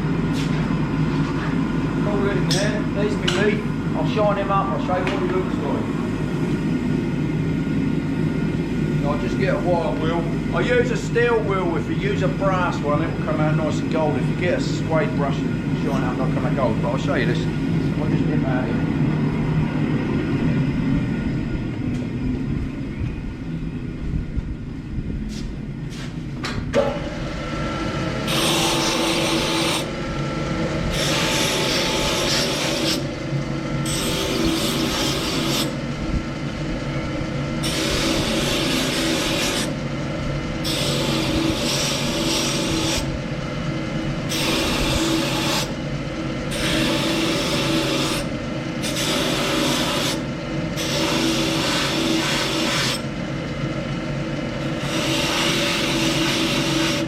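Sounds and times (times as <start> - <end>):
wire wheel scouring metal: 28.2 - 36.0, 37.6 - 39.8, 40.6 - 43.1, 44.2 - 45.8, 46.5 - 53.1, 54.6 - 57.0.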